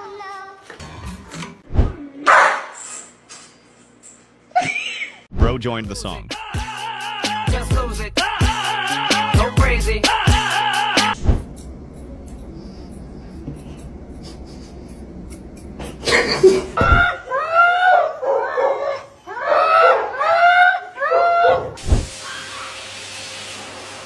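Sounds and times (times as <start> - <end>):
dog yelping: 16.1 - 22.8.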